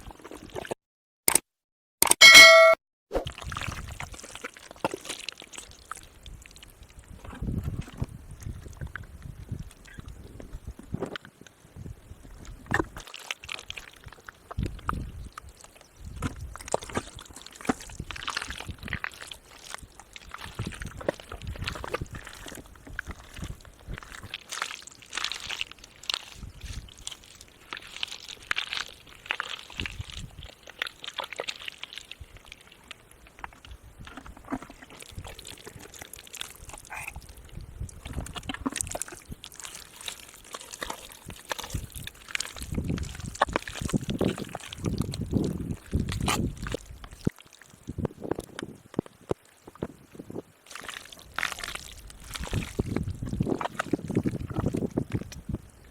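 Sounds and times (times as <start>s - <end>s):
sharp clicks and slaps: 1.3s - 2.8s
splashing in shallow muddy water: 3.1s - 10.2s, 12.6s - 48.6s, 49.3s - 55.9s.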